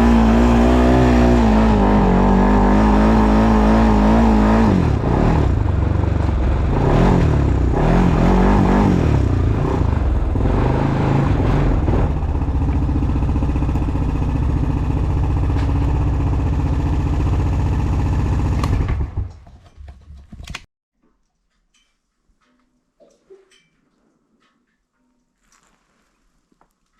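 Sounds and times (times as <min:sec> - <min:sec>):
atv engine running: 0:00.0 - 0:20.4.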